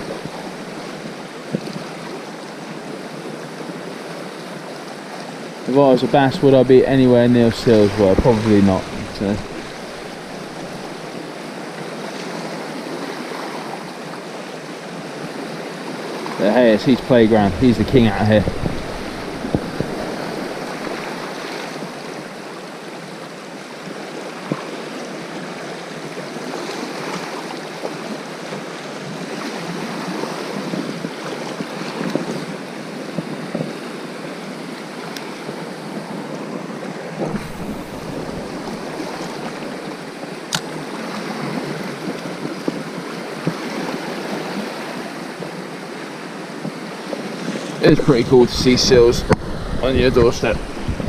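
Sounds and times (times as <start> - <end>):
wind rumble on microphone: 0.0 - 1.9, 6.1 - 11.4, 16.8 - 22.3, 29.0 - 33.9, 35.4 - 40.4, 41.0 - 45.6, 46.6 - 51.0
sea surf washing on shore: 0.0 - 51.0.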